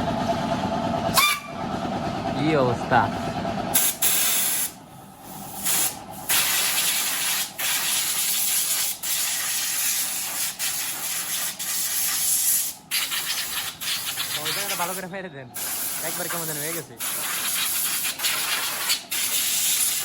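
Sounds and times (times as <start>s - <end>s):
high-pressure spray hissing: 3.8s - 15.0s, 15.6s - 20.0s.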